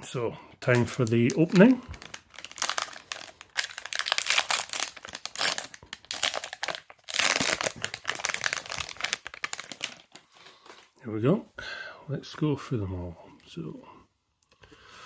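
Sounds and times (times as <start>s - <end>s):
card wrappers tearing and crinkling: 0.7s - 10.9s.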